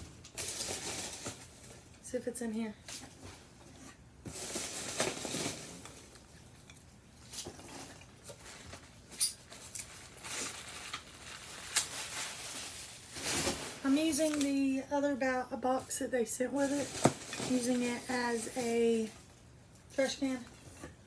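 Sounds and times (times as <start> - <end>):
packing peanuts rustling: 0.2 - 2.0, 4.3 - 6.4, 7.2 - 14.8, 16.5 - 19.3.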